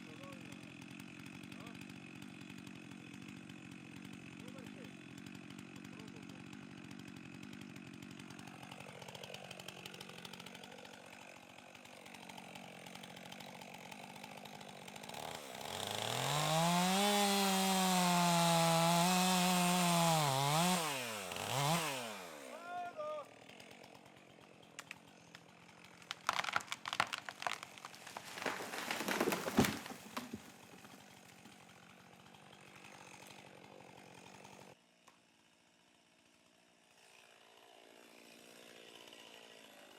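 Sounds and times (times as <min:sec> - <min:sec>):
chainsaw engine: 0:00.0 - 0:39.9
cracking and crashing: 0:24.8 - 0:31.6.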